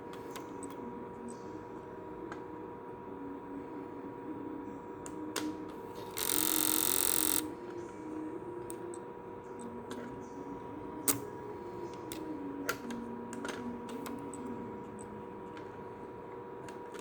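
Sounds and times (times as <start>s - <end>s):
disc drive mechanism buzzing: 5.8s - 7.6s.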